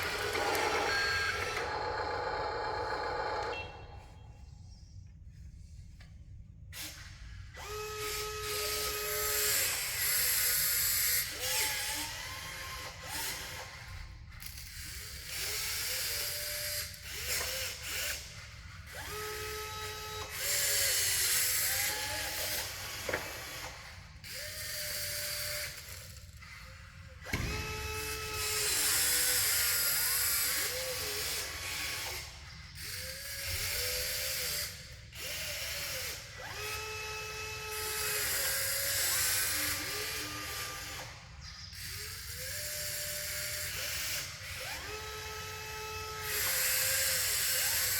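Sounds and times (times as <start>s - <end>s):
electric motors whining: 0.0s - 4.2s, 15.4s - 47.9s.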